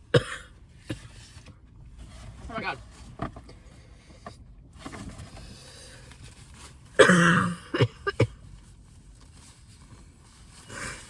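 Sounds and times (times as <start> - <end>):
woman coughing: 0.1 - 1.0, 7.0 - 8.4.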